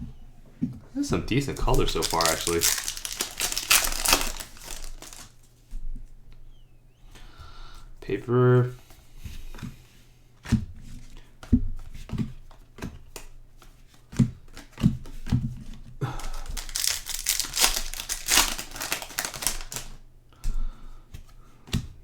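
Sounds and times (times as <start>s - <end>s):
card pack wrapper crinkling and tearing: 1.4s - 5.4s, 16.0s - 20.0s.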